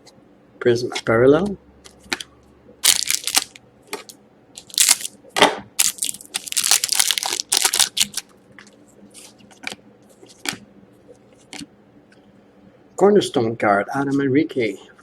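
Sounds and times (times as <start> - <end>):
card wrappers crinkling: 2.8 - 5.2, 5.8 - 8.3.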